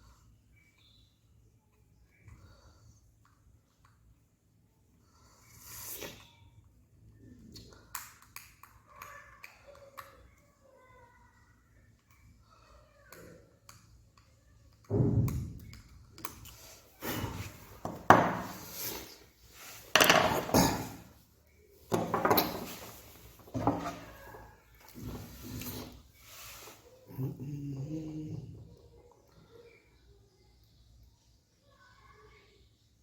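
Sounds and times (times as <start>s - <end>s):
objects knocking and scraping: 17.1s - 21.2s, 21.9s - 26.0s.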